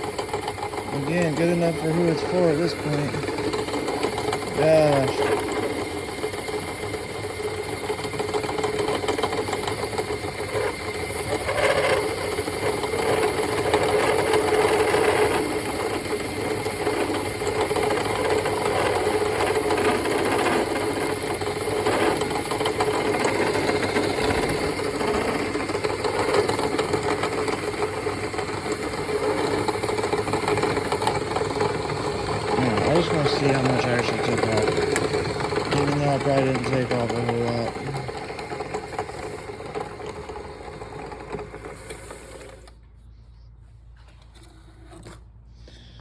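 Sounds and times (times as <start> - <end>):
lathe humming: 0.0 - 42.8
tool scraping bushing: 0.0 - 42.9, 43.7 - 46.0.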